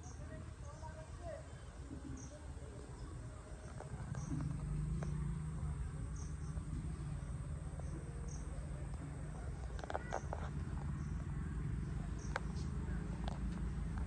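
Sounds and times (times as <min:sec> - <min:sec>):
low steady hum: 0:00.0 - 0:14.0
insect chirping: 0:03.6 - 0:14.0.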